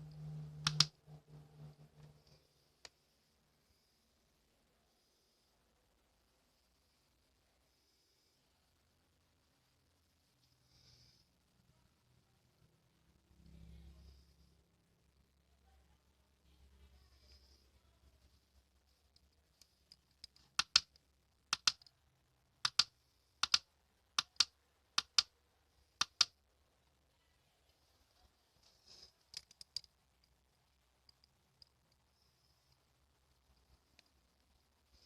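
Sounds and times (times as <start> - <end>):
faint background hiss: 0.0 - 35.0
sharp paired clicks: 0.6 - 0.9, 19.9 - 21.9, 22.6 - 23.6, 24.2 - 25.3, 26.0 - 26.4.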